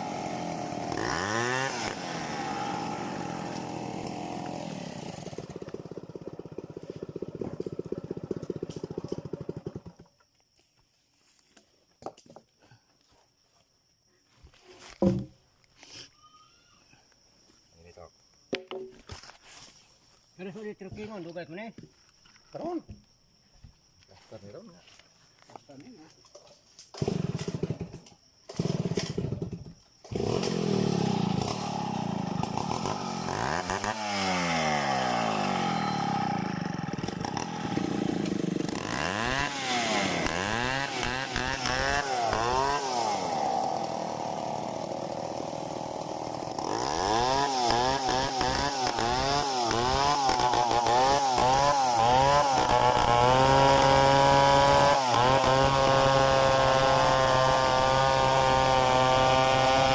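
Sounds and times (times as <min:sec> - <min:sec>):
chainsaw revving: 0:00.0 - 0:10.1, 0:26.9 - 0:59.9.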